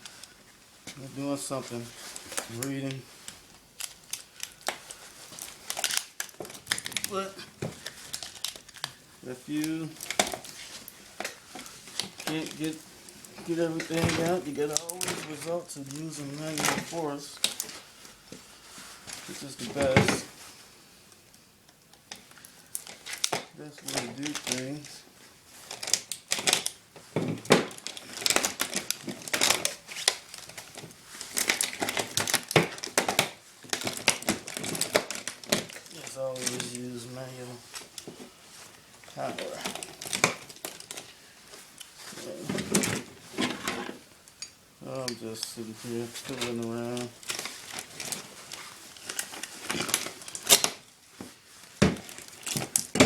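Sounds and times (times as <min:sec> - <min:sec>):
wire crackling and snapping: 0:01.7 - 0:18.4, 0:21.1 - 0:53.0.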